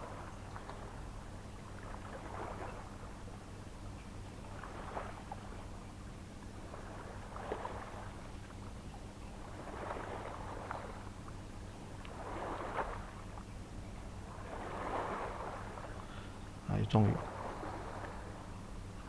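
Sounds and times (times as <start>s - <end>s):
waves washing against rocks: 12.0s - 13.3s, 14.3s - 16.0s, 17.0s - 18.4s.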